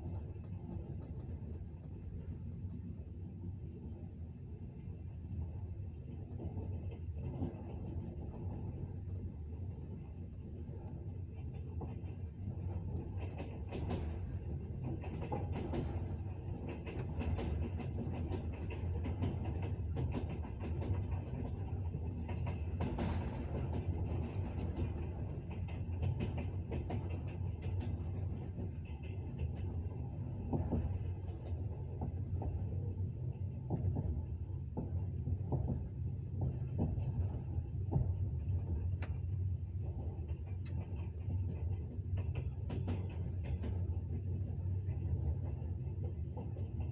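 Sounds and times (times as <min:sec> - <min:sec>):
train wheels clattering: 0:12.0 - 0:33.0, 0:33.7 - 0:46.9.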